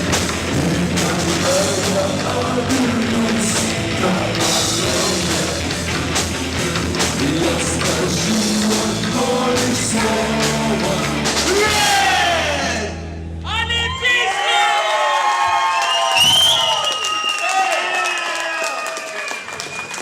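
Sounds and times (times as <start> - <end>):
drum kit: 0.0 - 13.2
distorted electric guitar: 0.0 - 13.4.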